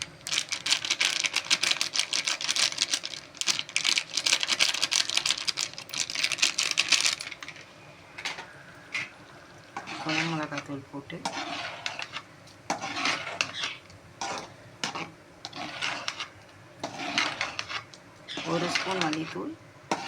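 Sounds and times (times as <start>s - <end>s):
spoon stirring in a pan: 5.2s - 20.0s.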